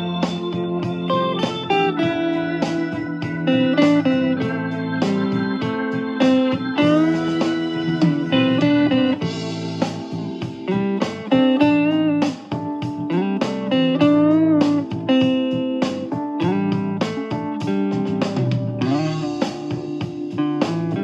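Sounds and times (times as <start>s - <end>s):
blues guitar solo: 0.0s - 21.0s.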